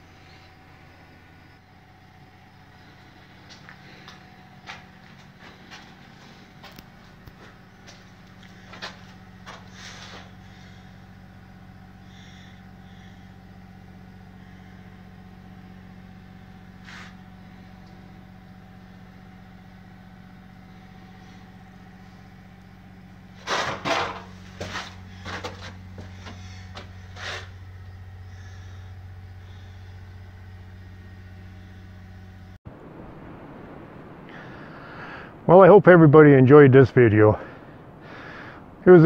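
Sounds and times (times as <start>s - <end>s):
steady low hum: 0.0s - 39.0s
knocks and clatters: 23.4s - 26.9s.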